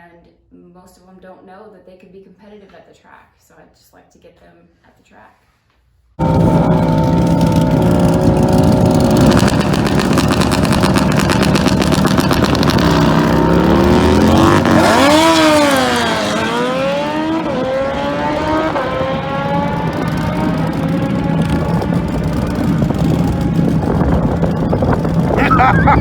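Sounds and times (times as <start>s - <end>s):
motorcycle engine revving: 6.2s - 26.0s.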